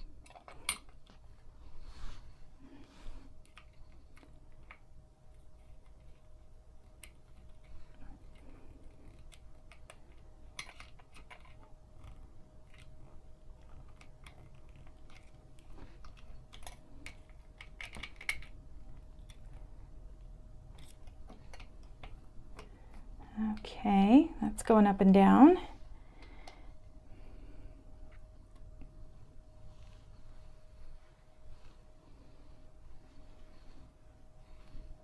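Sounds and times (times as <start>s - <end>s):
faint steady hum: 0.0s - 35.0s
small metal parts clicking: 16.0s - 18.6s.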